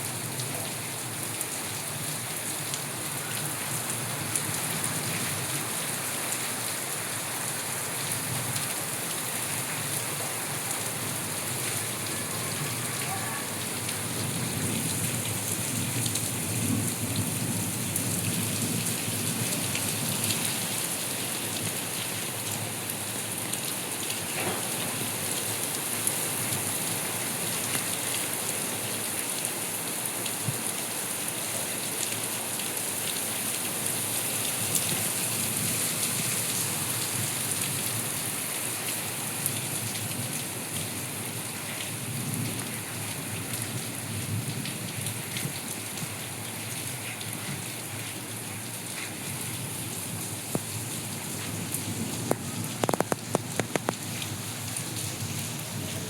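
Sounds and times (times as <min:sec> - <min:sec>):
steady rain falling: 0:00.0 - 0:56.0
raindrops ticking: 0:52.2 - 0:54.8.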